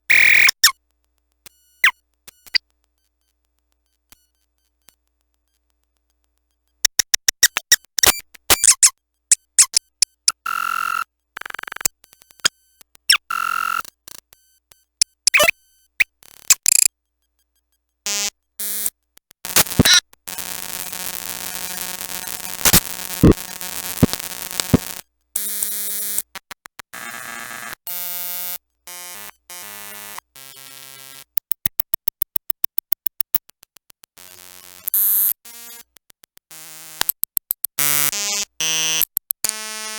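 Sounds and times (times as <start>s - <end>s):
stepped electronic tones: 0.1s - 0.7s, 15.3s - 15.5s, 19.5s - 25.0s
fast evenly spaced clicks: 19.5s - 25.0s
glitching toy stuttering bursts: 19.5s - 25.0s
harsh electronic buzzing: 19.5s - 26.1s.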